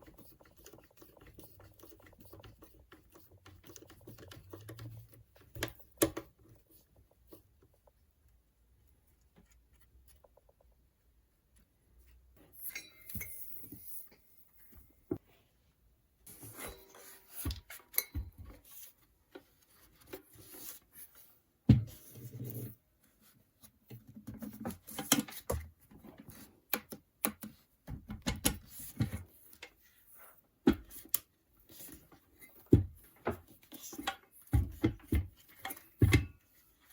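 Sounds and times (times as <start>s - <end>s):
metal parts and tools clinking: 12.4s - 14.3s.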